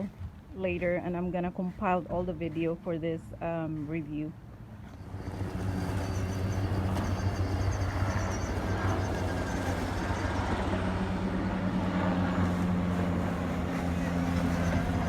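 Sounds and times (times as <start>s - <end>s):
lawnmower motor and blade hum: 4.8s - 15.0s.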